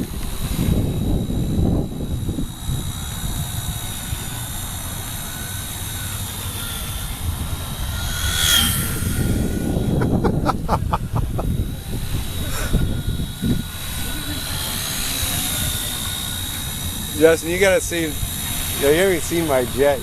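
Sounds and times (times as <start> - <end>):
wind on microphone: 0.0 - 18.8
rc helicopter whine: 0.0 - 20.0.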